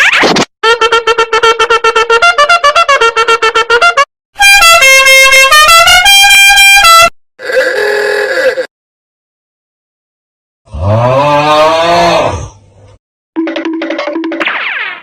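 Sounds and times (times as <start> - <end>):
blaring horn-like tune: 0.7 - 7.2.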